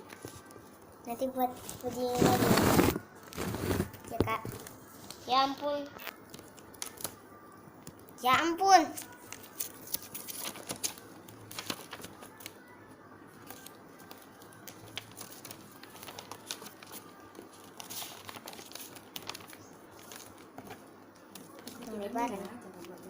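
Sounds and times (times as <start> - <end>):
paper folding and crinkling: 0.0 - 5.3, 6.0 - 7.2, 8.9 - 23.0.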